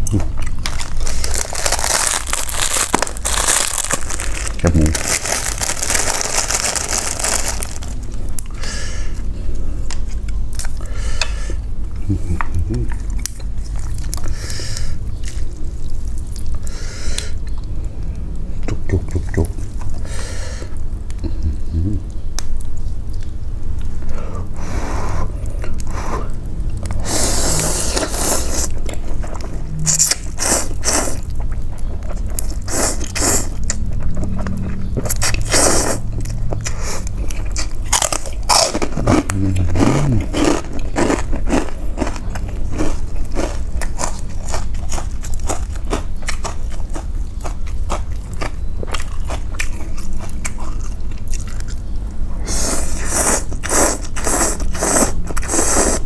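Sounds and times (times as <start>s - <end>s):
chewing: 0.0s - 24.6s, 25.2s - 56.0s
person slurping noodles: 27.0s - 28.8s, 39.0s - 40.6s, 52.4s - 56.0s.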